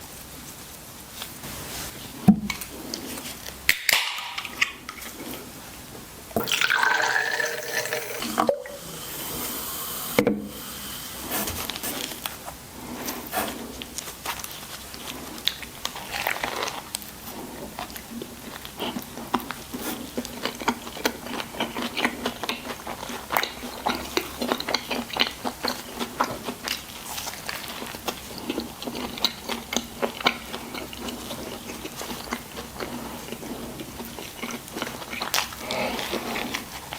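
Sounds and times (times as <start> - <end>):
liquid pouring into container: 6.4 - 10.2.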